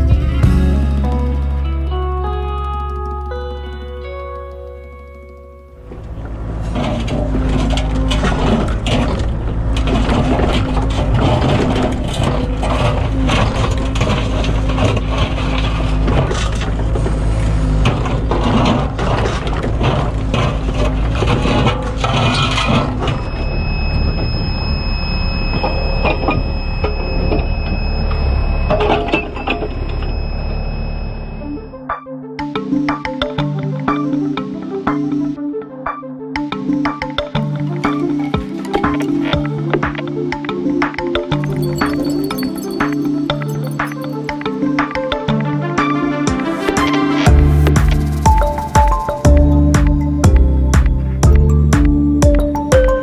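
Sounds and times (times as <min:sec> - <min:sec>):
excavator diesel engine: 0:00.0 - 0:31.8, 0:36.6 - 0:53.0
high whine: 0:00.0 - 0:31.9, 0:46.0 - 0:53.0.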